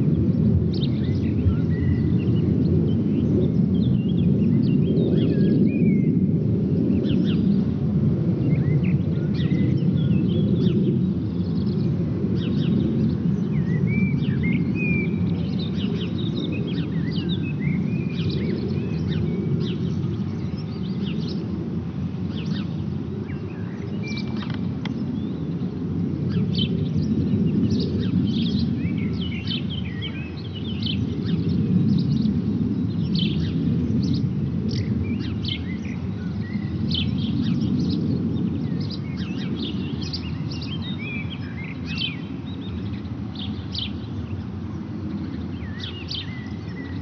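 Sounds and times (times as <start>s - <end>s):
distant jet engine rumble: 0.0s - 47.0s
birds chirping: 8.6s - 21.7s, 22.3s - 25.6s, 26.3s - 47.0s.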